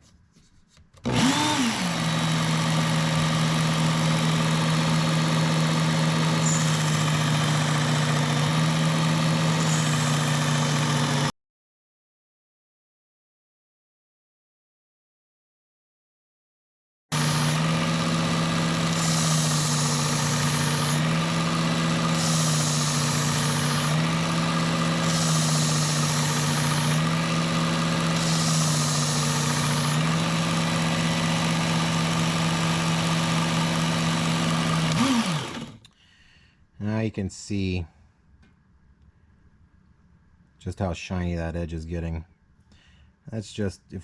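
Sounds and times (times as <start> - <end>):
belt sharpener motor humming: 1.0 - 11.3, 17.1 - 35.9.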